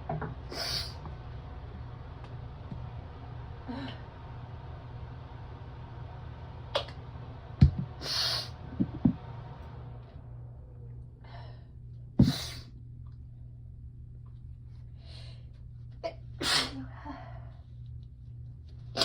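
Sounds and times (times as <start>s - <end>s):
steady low hum: 0.0s - 19.0s
person sneezing: 12.2s - 12.7s, 16.4s - 16.8s.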